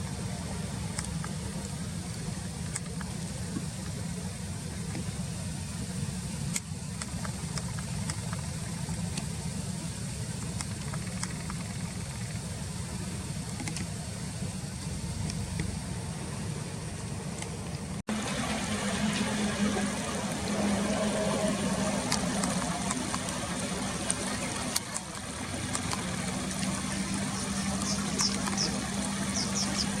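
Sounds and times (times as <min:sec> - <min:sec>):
river water flowing: 0:00.0 - 0:30.0
steady low hum: 0:00.0 - 0:30.0
small bird chirping: 0:27.1 - 0:30.0.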